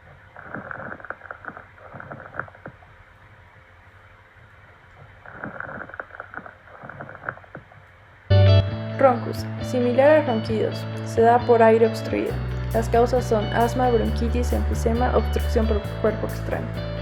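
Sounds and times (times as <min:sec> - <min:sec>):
lung crackles through stethoscope: 0:00.1 - 0:03.0, 0:05.0 - 0:08.0.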